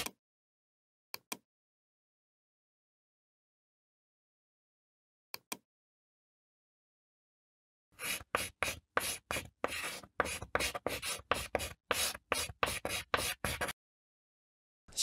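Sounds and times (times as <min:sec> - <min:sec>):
chalk scratching: 0:08.0 - 0:13.8.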